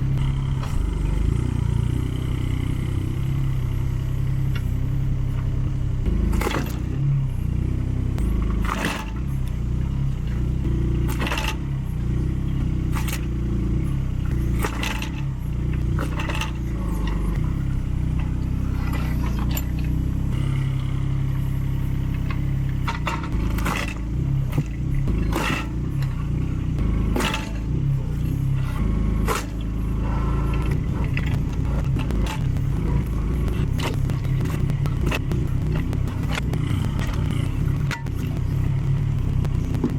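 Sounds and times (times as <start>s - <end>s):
mini excavator engine running: 0.0s - 39.9s
axe splitting firewood logs: 5.4s - 7.2s, 8.4s - 12.2s, 12.8s - 38.4s.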